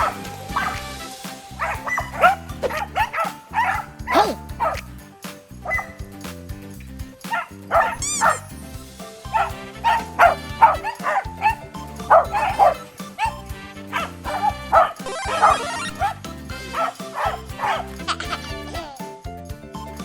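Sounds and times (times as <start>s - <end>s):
background music: 0.0s - 20.0s
dog barking in short yips: 1.6s - 4.9s, 7.3s - 8.5s, 16.8s - 17.8s.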